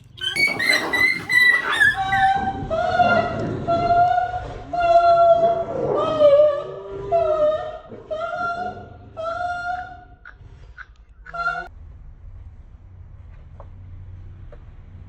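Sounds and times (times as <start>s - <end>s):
dog howling: 0.2s - 3.9s.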